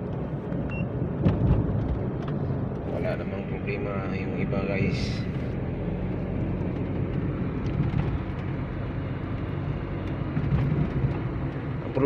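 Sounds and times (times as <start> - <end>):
car engine humming: 0.0 - 12.0
road noise: 0.0 - 12.0.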